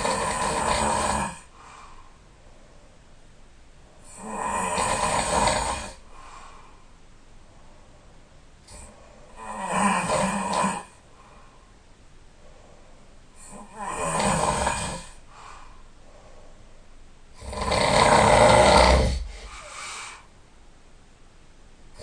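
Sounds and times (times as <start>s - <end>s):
person snoring loudly: 0.0s - 1.5s, 4.0s - 6.0s, 8.7s - 11.0s, 13.4s - 15.2s, 17.4s - 20.0s
soft breath: 1.3s - 4.2s, 5.9s - 9.5s, 10.8s - 13.7s, 14.9s - 17.4s, 19.2s - 20.5s.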